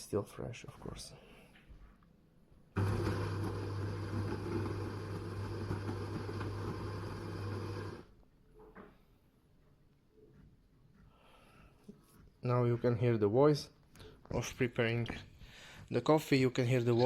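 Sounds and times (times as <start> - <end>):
coffee machine humming: 2.8 - 8.1.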